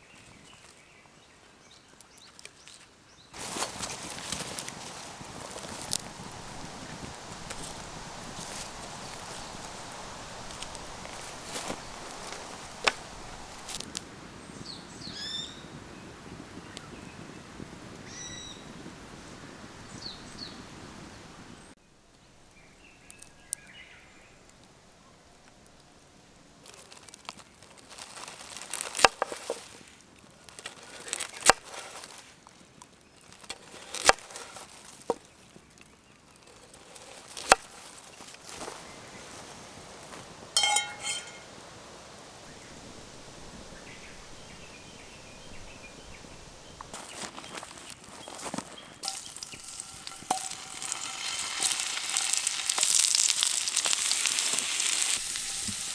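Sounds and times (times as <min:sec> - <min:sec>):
steady outdoor background: 0:00.0 - 0:18.2
birds chirping: 0:40.6 - 0:41.6, 0:42.5 - 0:55.7.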